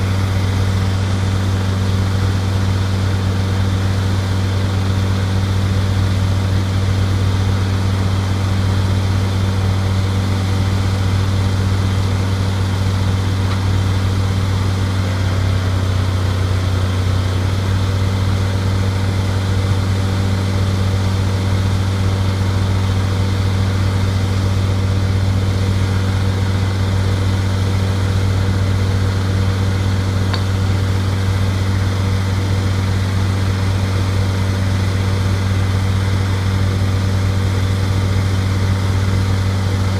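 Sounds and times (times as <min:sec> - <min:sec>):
loader engine humming: 0:00.0 - 0:39.9.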